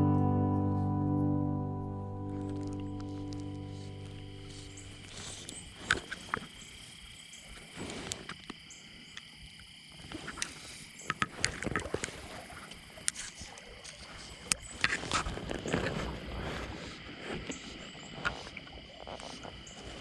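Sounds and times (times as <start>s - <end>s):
insect chorus: 2.3s - 20.0s
water splashing in a creek: 4.4s - 20.0s.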